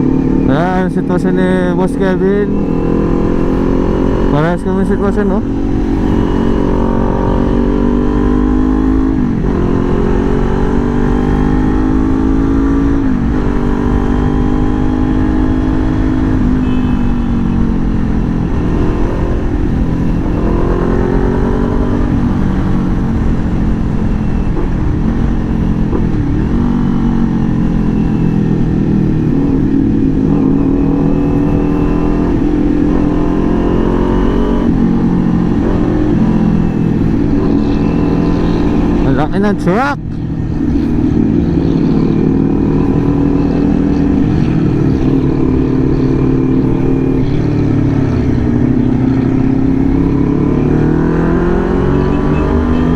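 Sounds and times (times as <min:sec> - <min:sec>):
motorcycle engine accelerating: 0:00.0 - 0:52.9.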